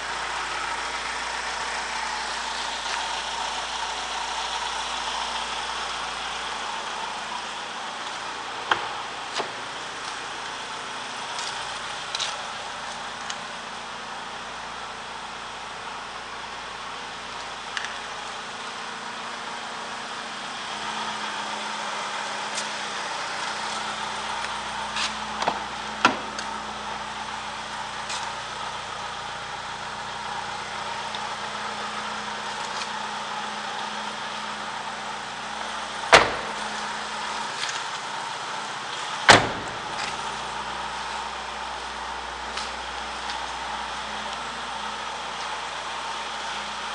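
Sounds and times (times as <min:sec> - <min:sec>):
car engine idling: 0:00.0 - 0:46.9
car doors shutting: 0:07.9 - 0:12.4, 0:22.4 - 0:26.9, 0:35.6 - 0:41.7.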